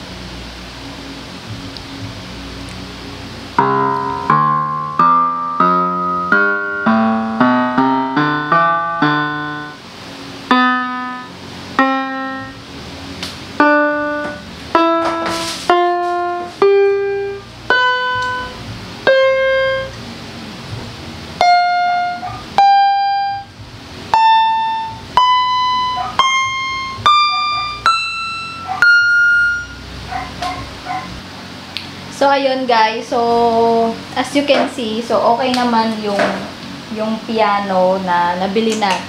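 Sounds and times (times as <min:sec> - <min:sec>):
electronic keyboard piano notes: 0:01.2 - 0:31.5.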